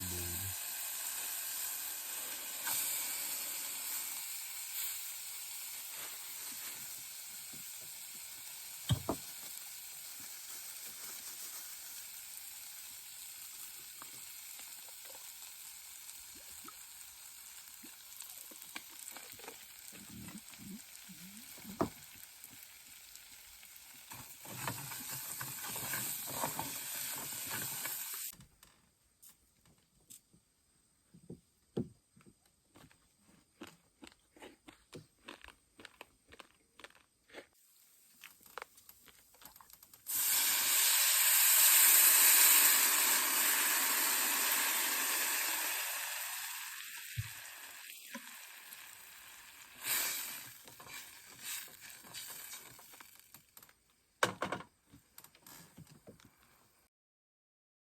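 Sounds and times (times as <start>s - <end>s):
fish sizzling in hot oil: 0.0s - 28.3s, 37.6s - 38.6s, 39.4s - 53.6s
utensil knocking in pan: 8.9s - 9.3s.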